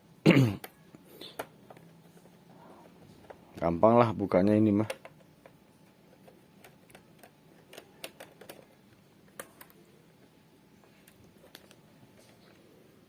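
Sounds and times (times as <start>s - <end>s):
plastic parts clicking and tapping: 4.6s - 9.9s.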